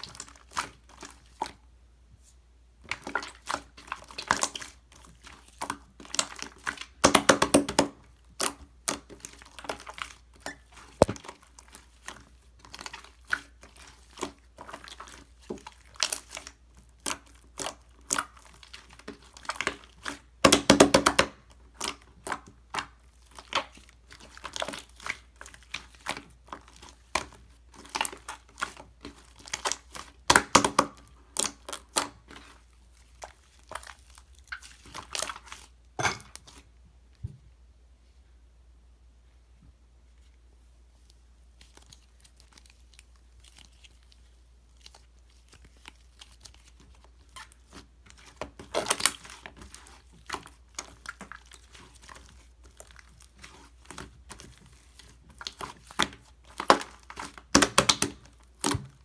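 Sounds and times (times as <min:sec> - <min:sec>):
slime clicking and crackling: 0:02.9 - 0:35.8, 0:41.5 - 0:59.0.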